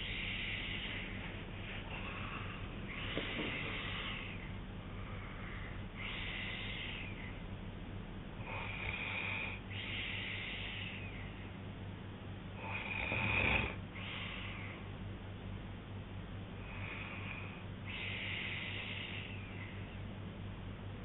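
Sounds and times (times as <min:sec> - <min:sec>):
man snoring: 0:08.4 - 0:11.0, 0:12.6 - 0:13.8.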